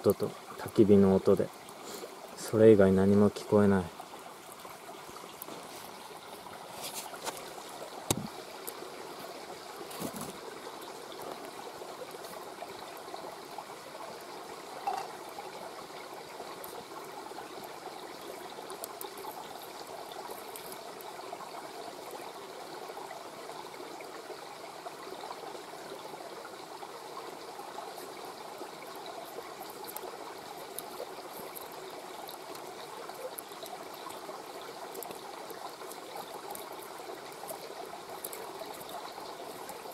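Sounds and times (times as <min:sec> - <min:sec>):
river murmuring over stones: 0:00.0 - 0:39.9
campfire crackling and popping: 0:14.3 - 0:22.2, 0:27.8 - 0:39.9.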